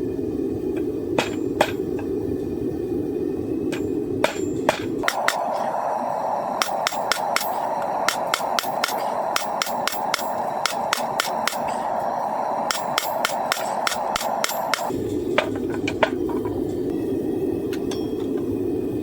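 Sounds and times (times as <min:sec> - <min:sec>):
steady rushing noise: 0:00.0 - 0:19.0
hammer striking steel on anvil: 0:01.2 - 0:01.8, 0:03.7 - 0:05.7, 0:06.6 - 0:16.2, 0:17.8 - 0:18.4.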